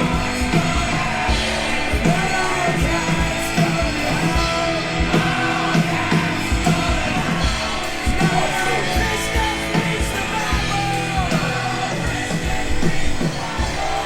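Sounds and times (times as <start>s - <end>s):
person singing and yelling: 0.0s - 14.0s
rock music: 0.0s - 14.0s.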